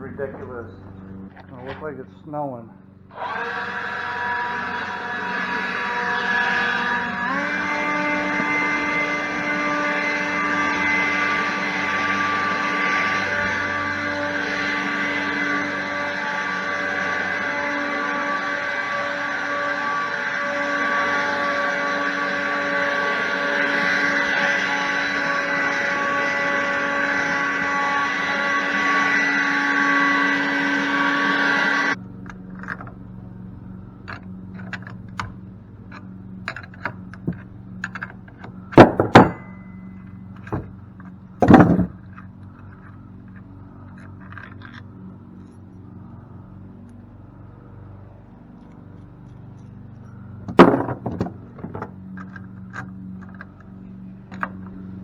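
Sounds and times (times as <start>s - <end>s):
motor-driven tool running: 3.0s - 40.8s
tools clicking and scraping on metal: 34.0s - 45.6s
loud metal clanks: 38.7s - 40.7s, 41.4s - 42.1s, 50.5s - 51.9s.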